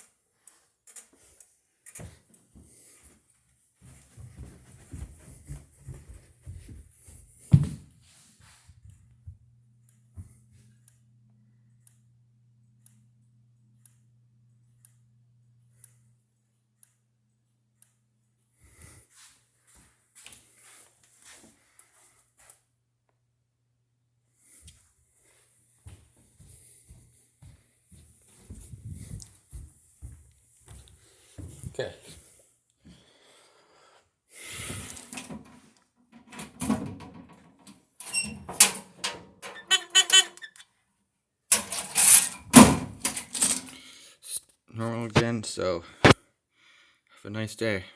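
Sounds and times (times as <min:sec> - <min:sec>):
rustling and handling noises: 0:00.0 - 0:09.0.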